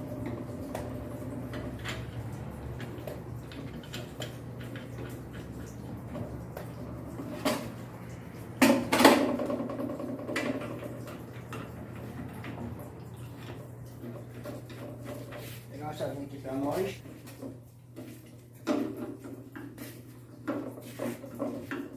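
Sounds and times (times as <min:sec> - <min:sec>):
small metallic clicks and knocks: 0:00.2 - 0:12.8.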